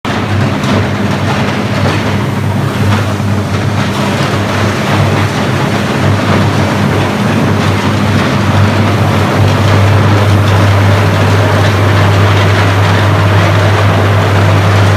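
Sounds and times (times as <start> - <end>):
furnace low hum: 0.1 - 14.9
electric arc crackling: 8.0 - 14.6.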